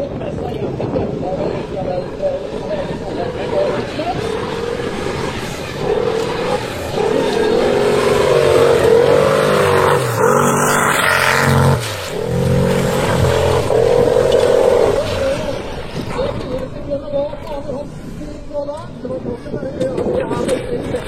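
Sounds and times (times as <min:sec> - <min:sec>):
vehicle engine revving: 0:01.7 - 0:16.8.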